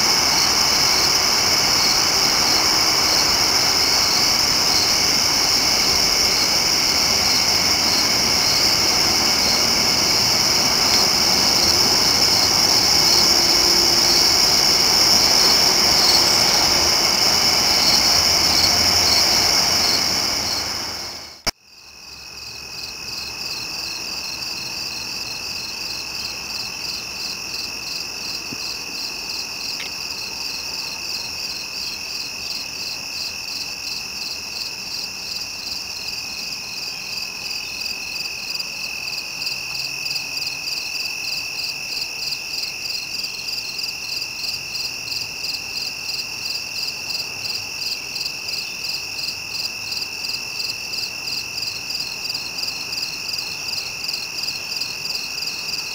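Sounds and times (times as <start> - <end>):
steady broad rumble: 0.0 - 21.4
crickets and insects chirping: 0.0 - 55.9
steady high insect trill: 0.0 - 55.9.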